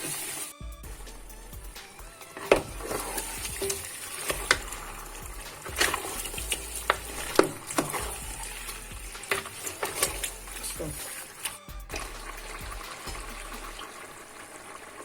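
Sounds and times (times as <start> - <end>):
spoon knocking and scraping in pot: 2.4 - 11.1.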